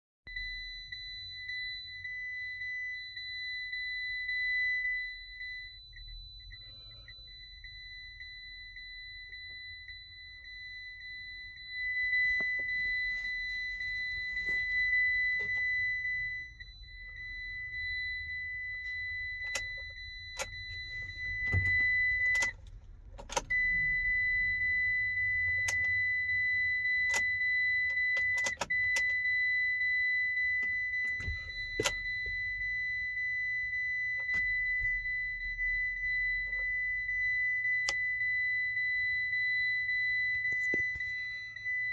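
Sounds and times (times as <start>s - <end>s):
high electronic warning tone: 0.3s - 41.9s
ignition key clicks: 18.8s - 26.0s, 26.8s - 29.3s, 30.6s - 32.5s, 34.1s - 35.2s, 36.3s - 38.4s, 40.2s - 41.3s.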